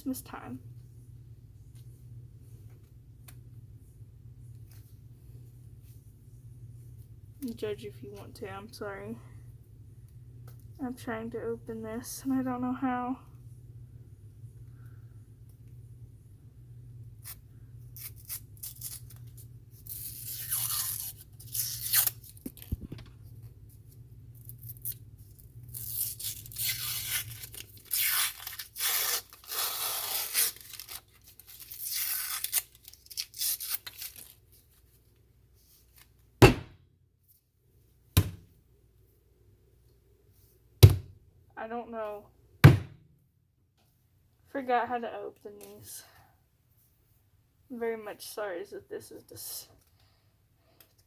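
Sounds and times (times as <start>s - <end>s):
paper wrapper rustling and tearing: 24.8s - 35.0s
sharp knocks: 36.4s - 36.8s.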